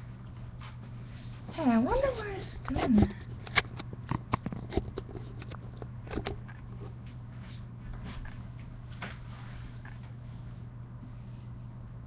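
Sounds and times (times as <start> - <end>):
low electrical hum: 0.0 - 12.0.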